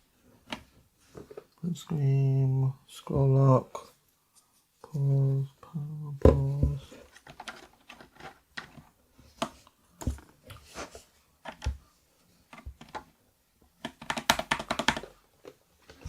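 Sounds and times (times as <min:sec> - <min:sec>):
mechanical keyboard keys clacking: 0:13.8 - 0:15.0.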